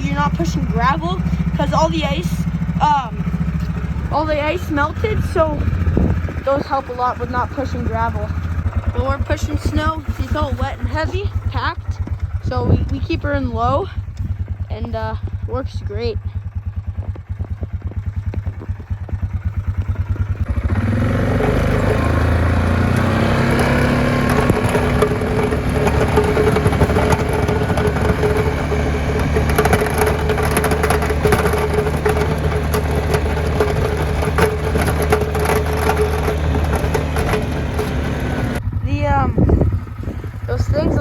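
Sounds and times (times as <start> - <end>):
snow scraping against plow blade: 0.0 - 5.8, 6.4 - 11.8, 20.5 - 38.6
atv engine running: 0.0 - 41.0.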